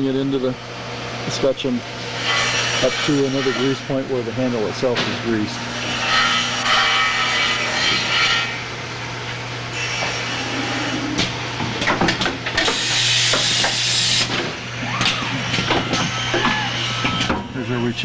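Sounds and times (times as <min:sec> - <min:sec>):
machine humming: 0:00.0 - 0:18.0
pneumatic clicks and clacks: 0:11.1 - 0:17.5
compressed air hissing: 0:12.6 - 0:14.4.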